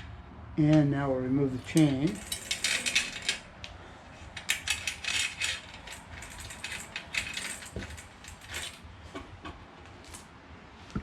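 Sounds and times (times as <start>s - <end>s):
bicycle chain rattling: 1.9s - 3.5s, 4.3s - 8.8s.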